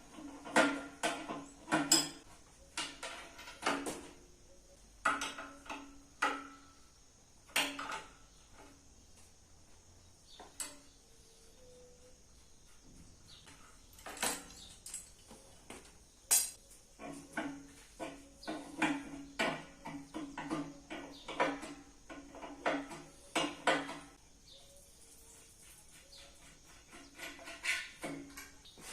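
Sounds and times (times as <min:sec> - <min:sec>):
metal parts clinking: 0:13.9 - 0:15.6, 0:16.3 - 0:16.6.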